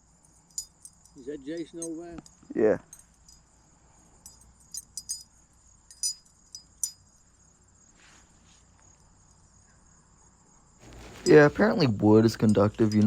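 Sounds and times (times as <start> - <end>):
light metallic clinks and jingles: 0.0 - 7.9, 8.6 - 10.0, 10.8 - 13.0
high-pitched insect trilling: 4.2 - 7.9.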